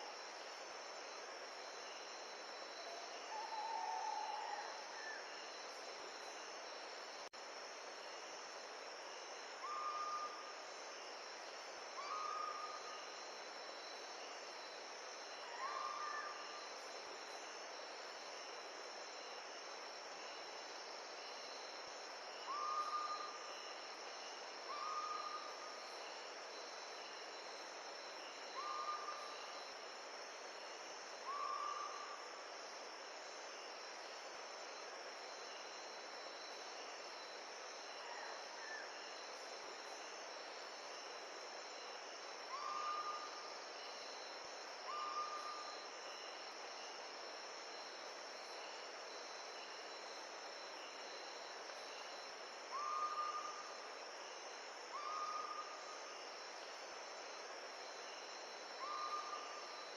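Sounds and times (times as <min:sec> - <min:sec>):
high insect drone: 0:00.0 - 0:59.9.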